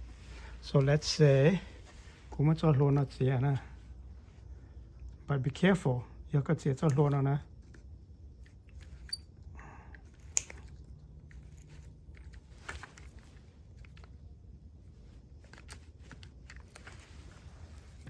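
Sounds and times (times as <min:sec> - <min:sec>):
low steady hum: 0:00.0 - 0:18.0
light clicks and rustles: 0:06.8 - 0:18.0.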